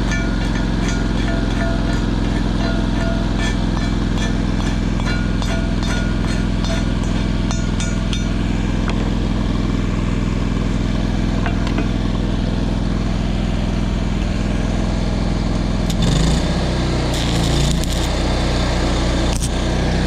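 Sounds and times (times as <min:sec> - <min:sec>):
welding machine engine running: 0:15.7 - 0:20.0.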